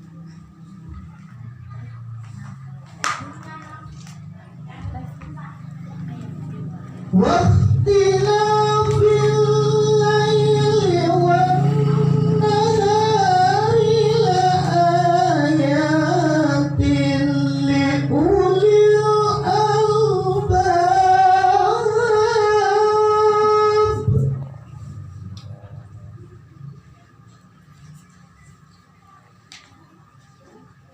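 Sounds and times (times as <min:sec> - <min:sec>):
low hum: 0:05.6 - 0:29.1
man reciting in ornamented chant: 0:07.0 - 0:25.2.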